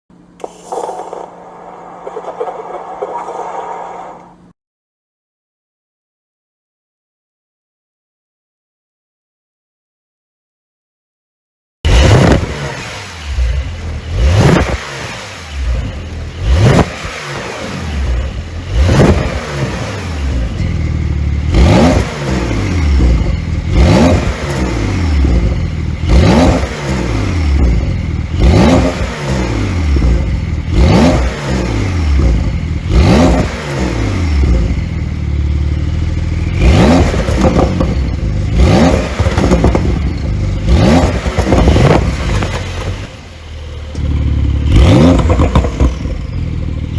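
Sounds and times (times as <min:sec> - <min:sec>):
exhaust crackles and pops: 0:00.4 - 0:04.5, 0:36.6 - 0:43.2, 0:44.7 - 0:46.3
car engine revving: 0:00.6 - 0:04.5, 0:11.9 - 0:46.9.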